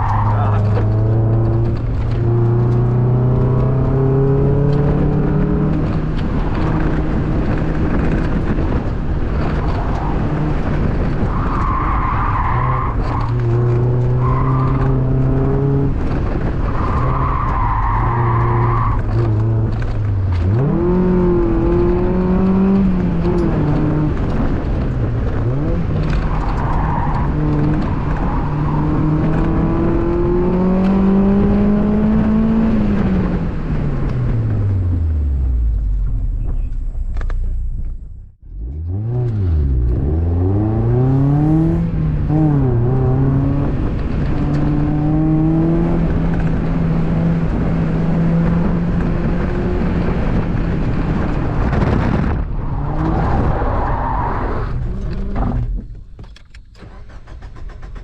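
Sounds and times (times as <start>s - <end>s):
tire squeal: 0.0s - 0.9s, 9.3s - 15.2s, 16.4s - 19.4s, 25.5s - 29.6s, 52.4s - 55.6s
car engine revving hard: 0.0s - 33.7s, 38.5s - 55.6s.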